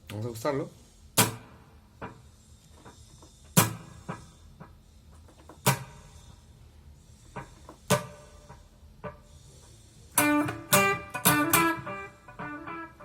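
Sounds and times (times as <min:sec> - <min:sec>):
effects pedal controls clicking: 0:10.2 - 0:13.0.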